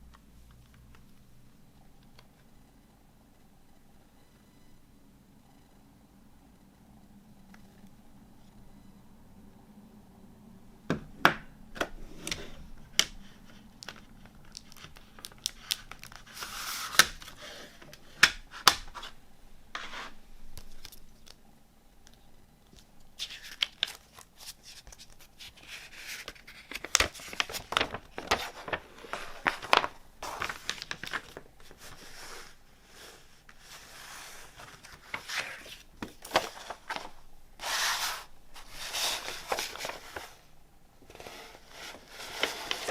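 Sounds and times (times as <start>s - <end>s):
plastic wrapping crinkling: 13.0s - 19.2s, 22.0s - 32.6s, 34.4s - 40.4s, 41.9s - 42.9s.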